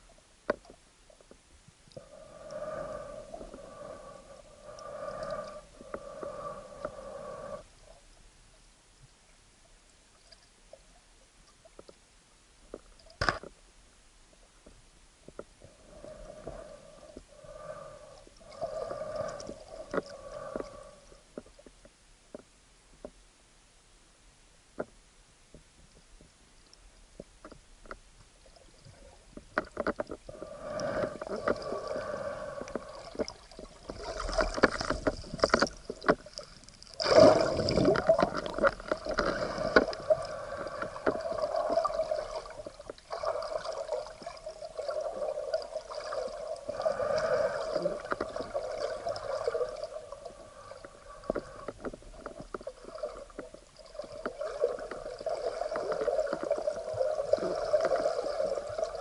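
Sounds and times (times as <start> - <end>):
muffled water sloshing and bubbling: 0.0 - 12.1, 14.3 - 23.2, 25.6 - 59.0.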